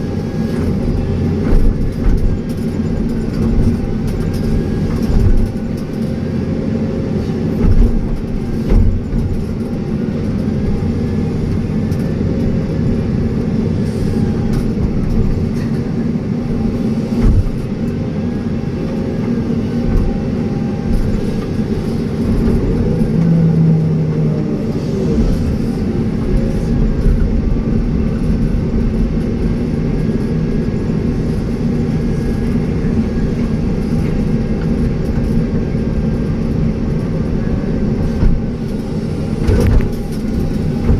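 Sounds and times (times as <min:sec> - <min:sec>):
excavator diesel engine running: 0:00.0 - 0:40.9.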